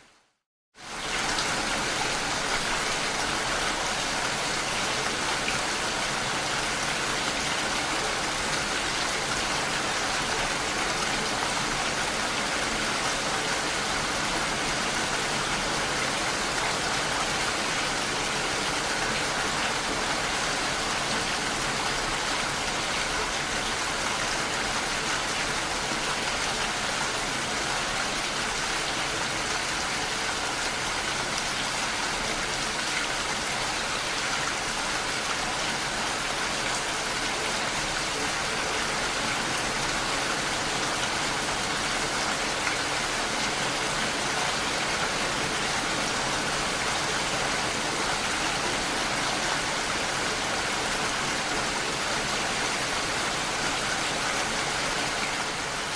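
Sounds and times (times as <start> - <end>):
steady rain falling: 0.0 - 55.9.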